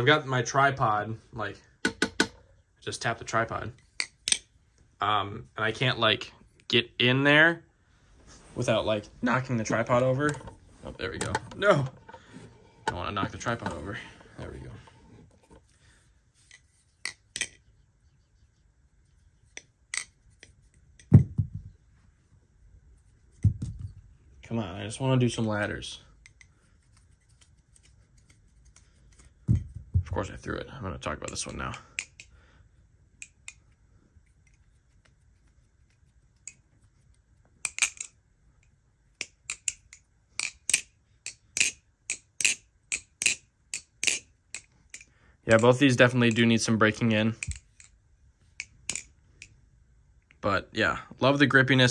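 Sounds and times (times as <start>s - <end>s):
butterfly knife handles clacking: 3.8s - 4.5s, 37.6s - 38.2s, 39.2s - 46.5s, 47.3s - 48.0s, 48.6s - 49.6s.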